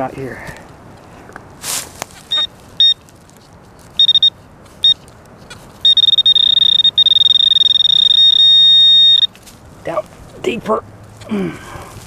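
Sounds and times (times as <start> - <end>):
short high beeps: 2.3 - 3.0, 4.0 - 5.0, 5.8 - 9.3
continuous high buzzing tone: 4.0 - 5.1, 5.8 - 11.7.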